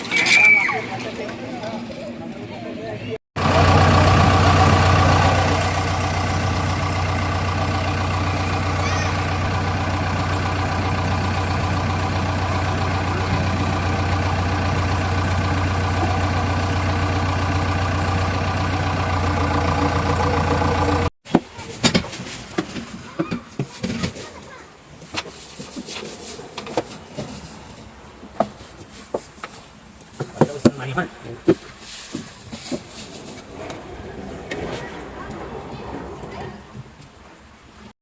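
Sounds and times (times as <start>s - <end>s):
diesel engine idling: 3.4s - 21.1s.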